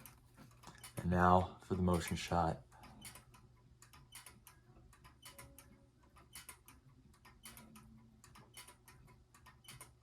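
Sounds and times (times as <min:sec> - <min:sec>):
desk toy clicking: 0:02.8 - 0:10.0.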